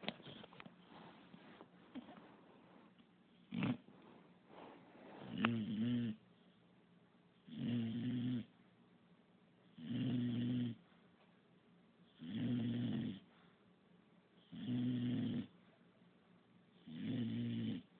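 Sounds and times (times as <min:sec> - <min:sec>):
dog snoring: 0:03.3 - 0:03.9, 0:05.2 - 0:06.2, 0:07.4 - 0:08.6, 0:09.7 - 0:10.8, 0:12.1 - 0:13.4, 0:14.4 - 0:15.6, 0:16.8 - 0:17.9.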